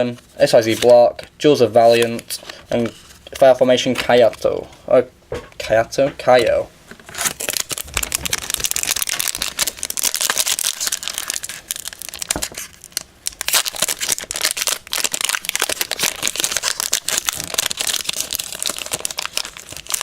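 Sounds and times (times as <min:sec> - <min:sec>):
foil wrapper crinkling: 0:07.2 - 0:20.0.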